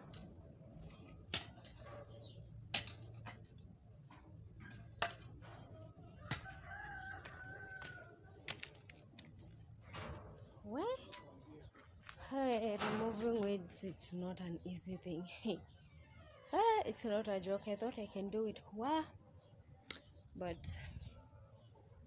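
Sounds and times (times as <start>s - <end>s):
rooster crowing: 6.2s - 8.2s.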